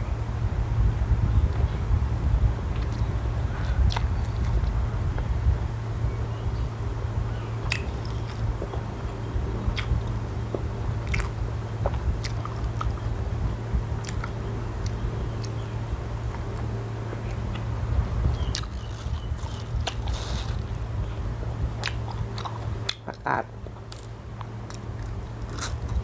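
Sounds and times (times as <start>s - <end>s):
low hum: 0.0s - 26.0s
person chewing crunchy food: 7.6s - 8.9s, 9.7s - 13.1s, 14.0s - 15.6s, 18.4s - 20.9s, 21.8s - 26.0s.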